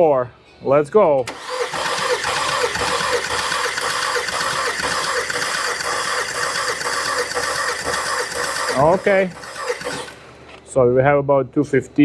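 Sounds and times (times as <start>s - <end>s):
starter cranking engine: 1.2s - 10.2s.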